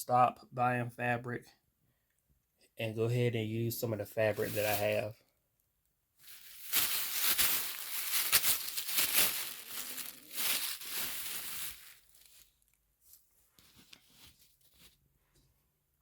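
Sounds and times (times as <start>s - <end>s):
fabric rustling: 4.4s - 5.1s, 6.2s - 12.6s.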